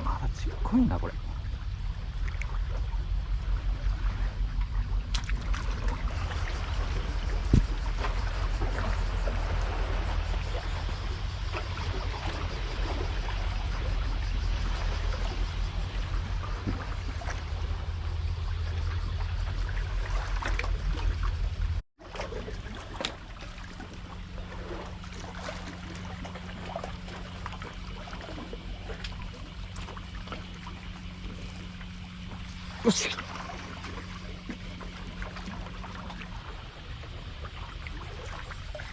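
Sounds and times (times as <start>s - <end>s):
heavy low rumble: 0.0s - 21.8s
steady low hum: 0.0s - 38.9s
water lapping and trickling: 0.0s - 38.9s.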